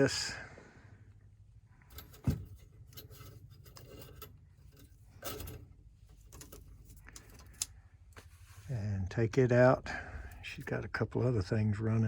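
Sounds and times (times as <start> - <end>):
light clicks and scraping: 1.8 - 8.8.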